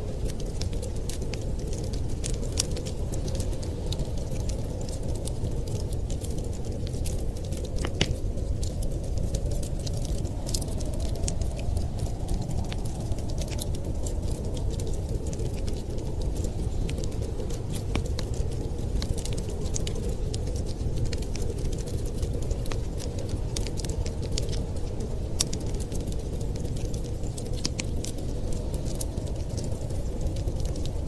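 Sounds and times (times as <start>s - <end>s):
wood fire crackling: 0.0s - 31.0s.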